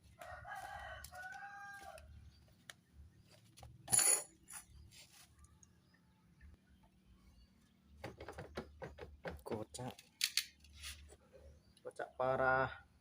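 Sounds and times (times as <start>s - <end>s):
rooster crowing: 0.1s - 2.1s
metal tool clinking on metal: 3.9s - 4.7s.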